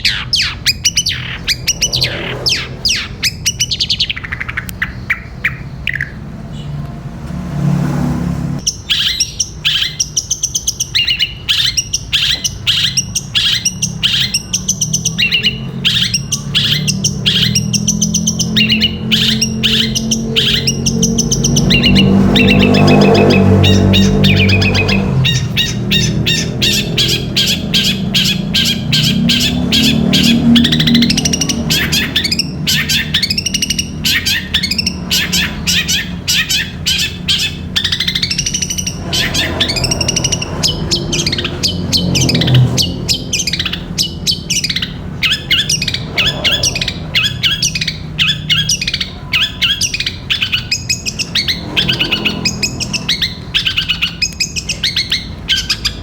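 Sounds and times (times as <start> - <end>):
shrike singing fast chattering song: 0.0 - 6.8, 8.6 - 56.0.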